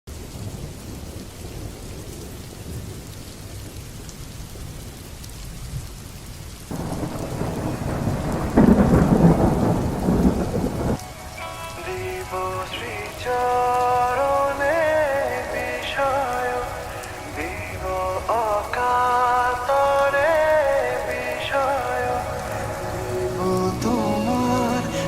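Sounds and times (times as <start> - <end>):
rain falling: 0.1 - 25.0
loud peal of thunder: 6.7 - 13.4
thunder rumbling: 6.7 - 25.0
music: 10.9 - 25.0.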